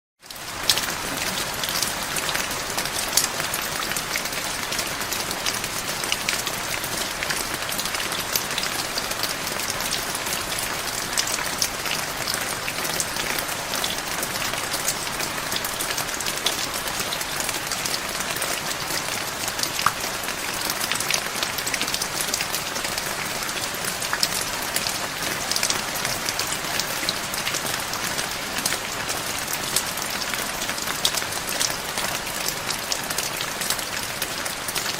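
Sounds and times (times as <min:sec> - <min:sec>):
heavy rain hissing: 0:00.5 - 0:17.8
raindrops ticking: 0:04.4 - 0:10.3.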